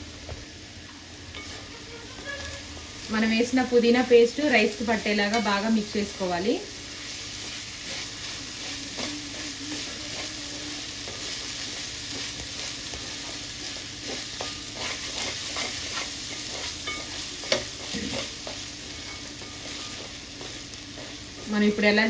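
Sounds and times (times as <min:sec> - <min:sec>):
food sizzling in a pan: 0:00.0 - 0:22.0
spoon scraping and tapping pan: 0:01.4 - 0:02.6.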